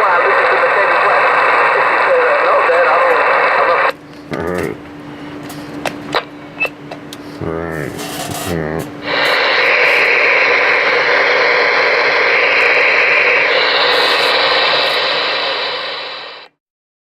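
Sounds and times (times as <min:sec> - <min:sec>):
radio static hissing: 0:00.0 - 0:04.0, 0:08.2 - 0:16.6.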